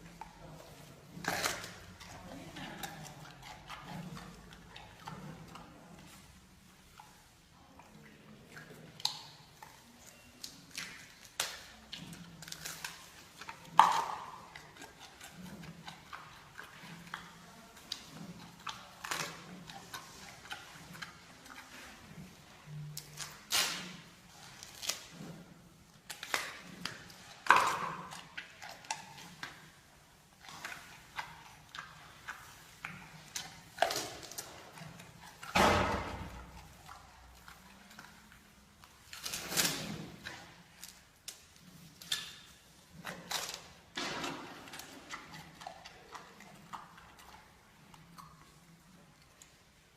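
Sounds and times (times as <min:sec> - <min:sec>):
panda chewing bamboo: 0:00.0 - 0:49.9.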